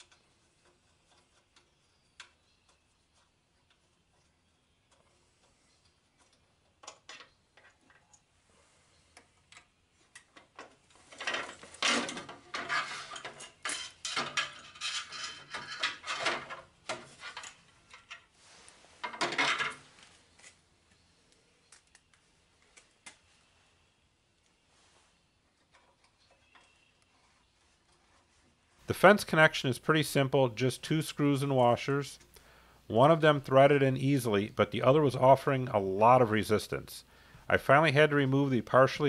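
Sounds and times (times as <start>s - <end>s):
metal parts clattering: 11.1s - 18.2s, 19.0s - 20.0s.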